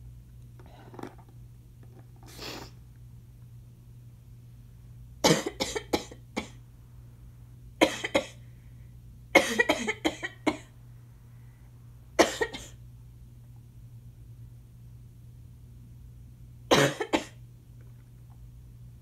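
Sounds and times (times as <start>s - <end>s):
harsh coughing fits: 5.2s - 6.6s, 7.8s - 8.4s, 9.3s - 10.7s, 12.2s - 12.8s, 16.7s - 17.4s.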